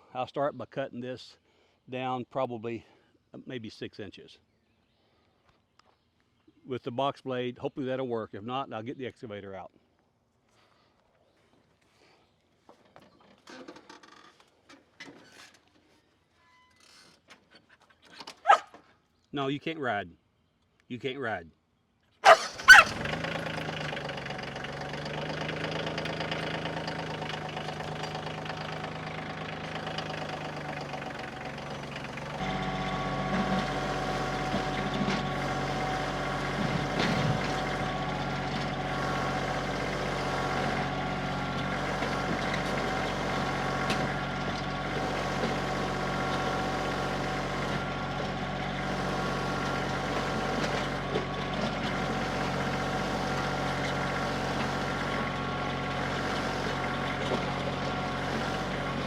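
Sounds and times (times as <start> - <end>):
tractor diesel engine running: 22.2 - 59.0.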